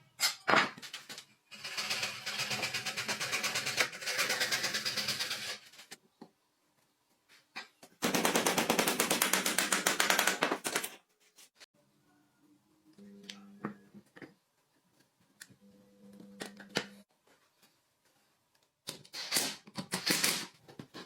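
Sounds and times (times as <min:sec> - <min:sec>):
rapid mechanical hammering: 0:08.0 - 0:10.8.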